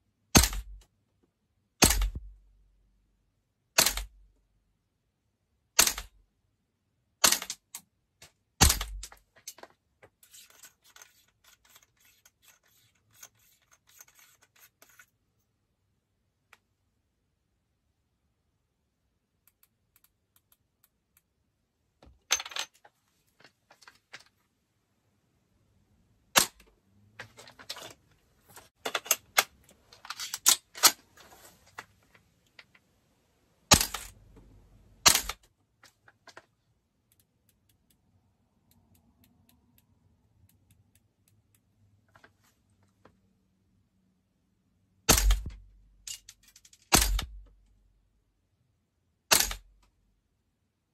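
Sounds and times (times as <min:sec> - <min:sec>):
airsoft gun hard cracks: 0:00.4 - 0:00.8, 0:01.8 - 0:02.3, 0:08.6 - 0:09.1.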